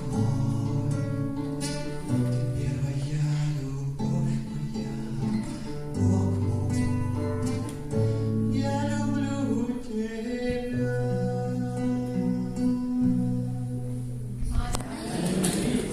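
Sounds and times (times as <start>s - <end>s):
man singing: 0.0s - 14.3s
acoustic guitar: 0.0s - 15.9s.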